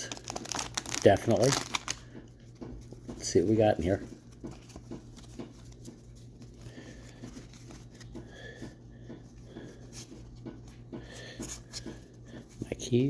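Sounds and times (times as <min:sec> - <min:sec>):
wrapper tearing and crinkling: 0:00.0 - 0:02.0
low steady hum: 0:00.0 - 0:13.0
cards clicking while handled: 0:00.1 - 0:02.0.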